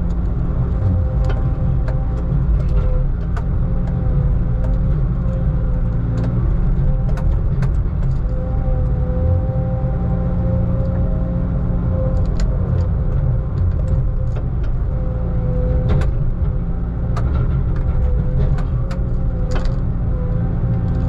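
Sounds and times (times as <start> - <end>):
constant whining tone: 0.0 - 21.0
diesel machine rumbling: 0.0 - 21.0
sharp knocks and clicks: 0.1 - 8.4, 15.7 - 19.9.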